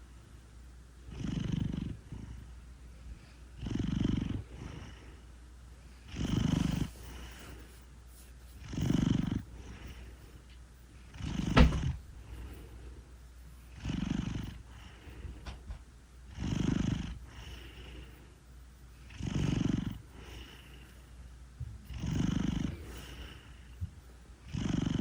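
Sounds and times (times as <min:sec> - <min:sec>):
cat purring: 0:01.0 - 0:02.6, 0:03.2 - 0:25.0
cat snoring: 0:01.1 - 0:02.5, 0:03.6 - 0:05.2, 0:06.1 - 0:07.6, 0:08.6 - 0:10.1, 0:11.0 - 0:12.7, 0:13.7 - 0:15.6, 0:16.3 - 0:18.2, 0:19.0 - 0:21.0, 0:21.8 - 0:25.0.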